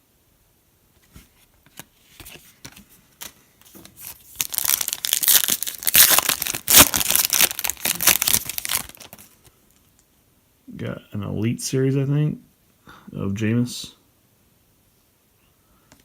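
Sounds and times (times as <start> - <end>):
wrapper tearing and crinkling: 4.0 - 9.4.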